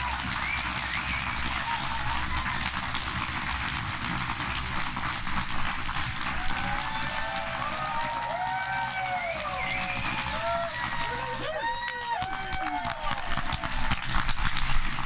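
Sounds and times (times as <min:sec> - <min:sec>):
audience applauding: 0:00.0 - 0:15.0.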